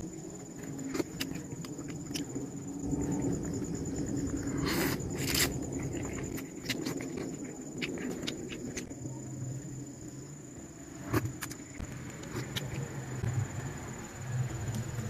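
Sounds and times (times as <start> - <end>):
chewing noodles: 0.6 - 3.6, 4.3 - 9.0.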